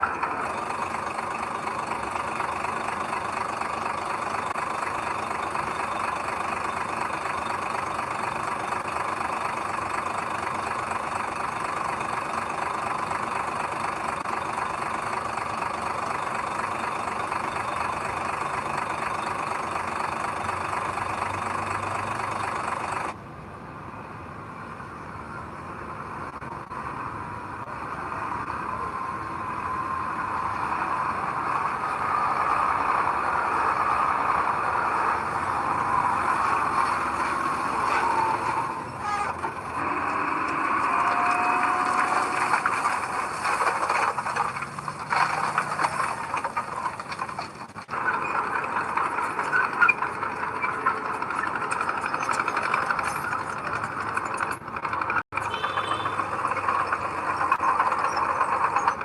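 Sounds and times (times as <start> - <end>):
heavy diesel machinery running: 0.0 - 23.3, 24.2 - 59.0.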